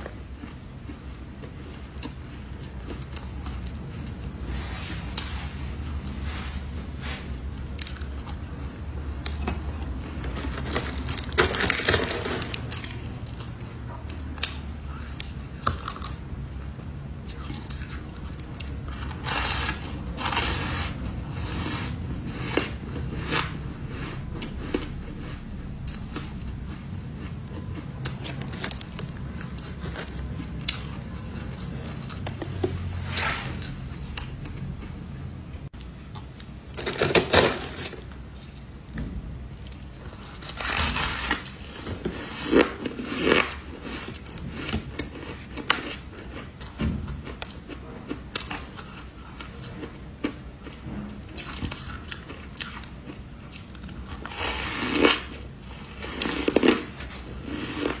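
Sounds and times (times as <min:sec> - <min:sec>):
person crunching ice: 0:40.1 - 0:46.4, 0:53.6 - 0:58.0.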